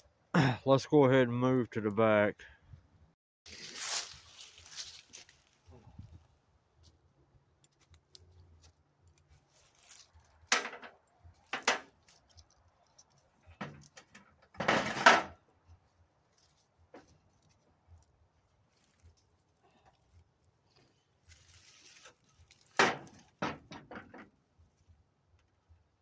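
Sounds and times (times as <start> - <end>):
parts and tools clanking: 7.6 - 15.5, 21.7 - 24.4.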